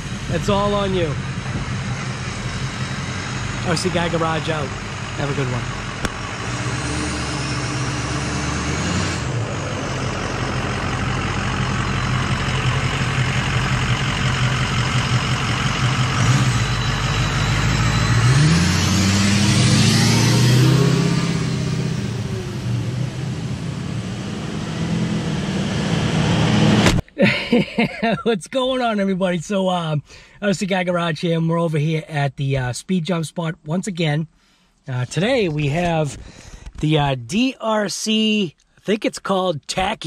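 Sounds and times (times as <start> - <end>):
motor vehicle running: 0.0 - 27.0
vehicle driving past: 1.2 - 26.8.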